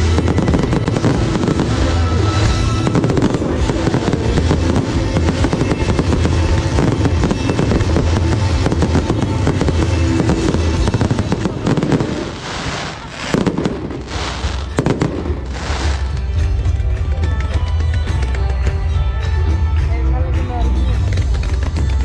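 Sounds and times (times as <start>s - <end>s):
loud music with bass: 0.0s - 12.6s, 13.2s - 22.0s
fireworks hissing bursts: 0.0s - 16.4s
fireworks crackling and popping: 0.0s - 19.2s, 21.0s - 22.0s.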